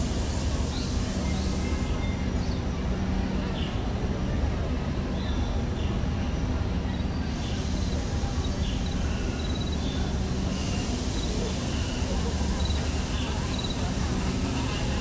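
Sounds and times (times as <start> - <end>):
high hiss: 7.3 - 15.0
insect chirps and trills: 7.6 - 13.9.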